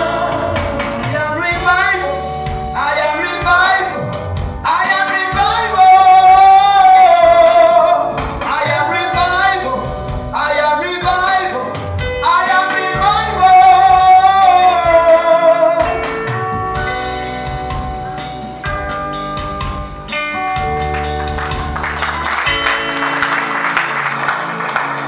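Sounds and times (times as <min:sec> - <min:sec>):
person singing worship song: 0:00.0 - 0:16.4
instrumental accompaniment: 0:00.0 - 0:25.0.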